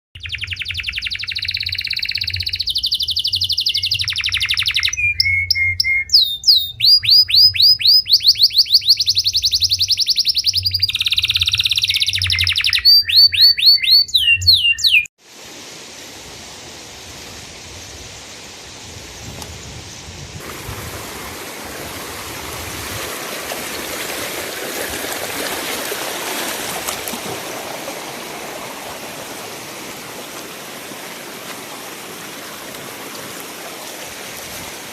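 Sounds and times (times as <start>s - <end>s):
songbird singing: 0.1s - 15.1s
waterfall rushing: 20.4s - 34.9s.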